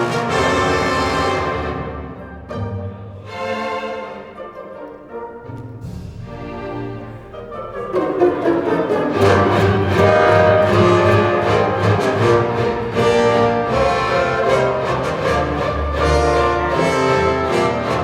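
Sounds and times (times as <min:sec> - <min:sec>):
orchestral music over loudspeakers: 0:00.0 - 0:18.0.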